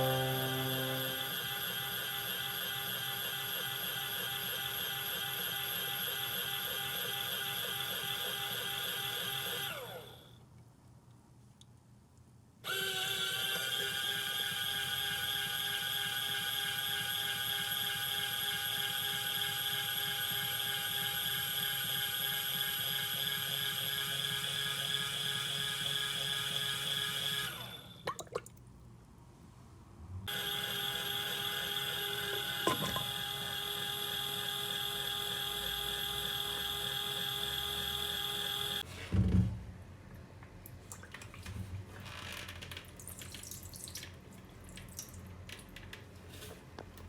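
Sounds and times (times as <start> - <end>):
mini washing machine running: 12.7 - 27.9, 30.3 - 38.8.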